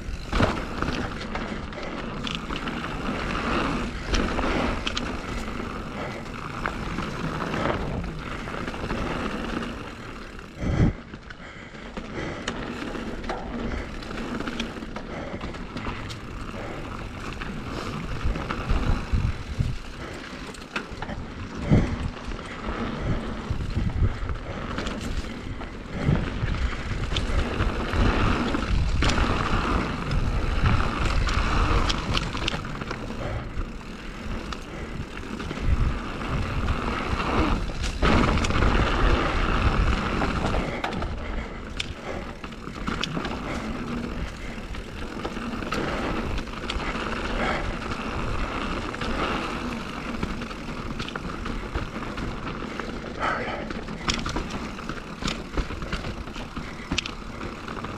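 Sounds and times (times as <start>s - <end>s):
bike rattling and knocking: 0.0s - 57.9s
bike tyres rolling on dirt: 0.0s - 57.9s
wind on microphone: 17.6s - 20.1s, 23.0s - 42.3s.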